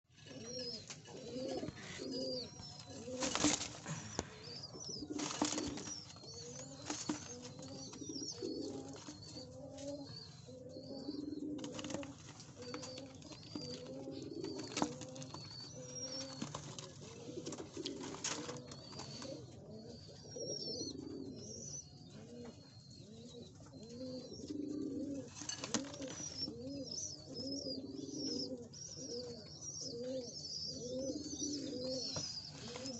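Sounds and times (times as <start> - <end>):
pigeons cooing: 0.1 - 32.9.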